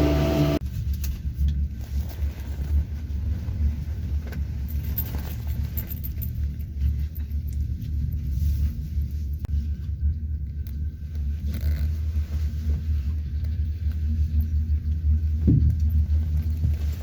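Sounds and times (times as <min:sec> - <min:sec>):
short pitched hum: 0:00.0 - 0:00.6
vehicle rumbling: 0:00.0 - 0:17.0.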